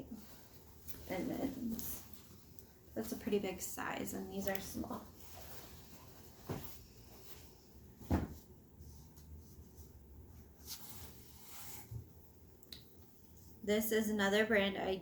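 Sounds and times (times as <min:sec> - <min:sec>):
soft thumps and rustles: 0:05.2 - 0:08.5.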